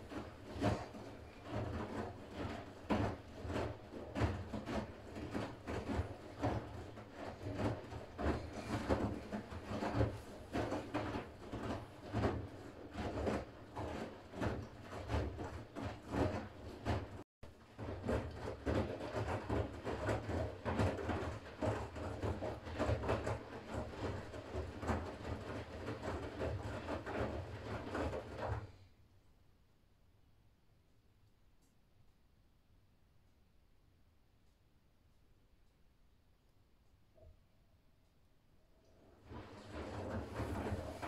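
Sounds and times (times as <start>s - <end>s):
laundry tumbling in washing machine: 0.0s - 28.9s, 38.8s - 41.0s.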